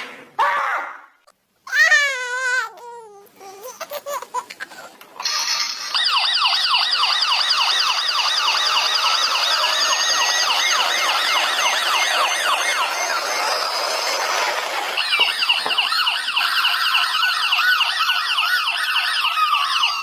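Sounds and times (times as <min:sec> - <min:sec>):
toy electronic siren yelping: 0:05.2 - 0:20.0.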